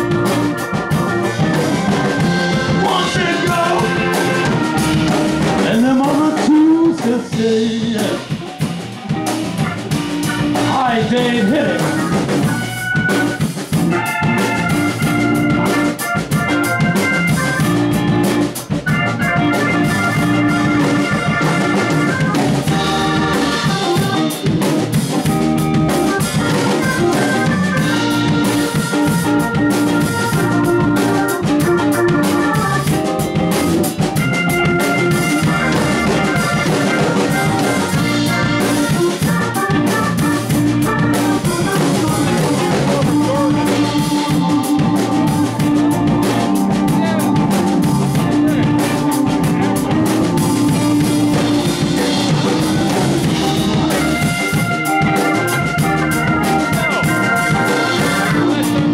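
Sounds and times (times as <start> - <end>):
blues band instrumental: 0.0 - 58.9
drum kit beat: 0.0 - 58.9
lead melodic solo: 0.0 - 58.9.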